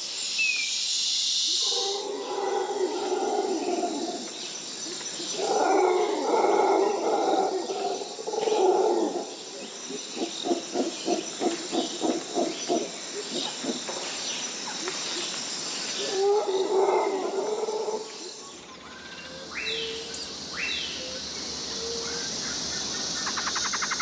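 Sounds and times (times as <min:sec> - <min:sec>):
high buzz of insects: 0:00.0 - 0:24.0
howler monkeys roaring and grunting: 0:01.6 - 0:04.3, 0:05.2 - 0:14.1, 0:16.0 - 0:18.4.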